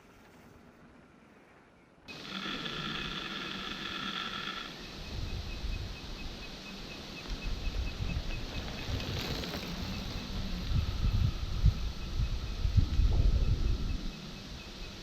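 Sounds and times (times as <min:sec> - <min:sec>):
bicycle freehub ratchet buzzing: 0:02.1 - 0:04.8.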